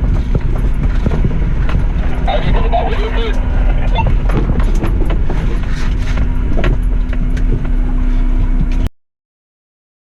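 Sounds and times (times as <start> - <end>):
knocks and rattles: 0.0 - 8.8
vehicle rumbling on rough track: 0.0 - 8.9.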